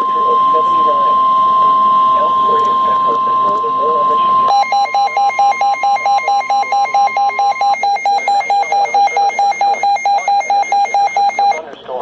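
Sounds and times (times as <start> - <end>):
electronic alarm beeps: 0.0 - 11.6
faint steady warning tone: 0.0 - 11.6.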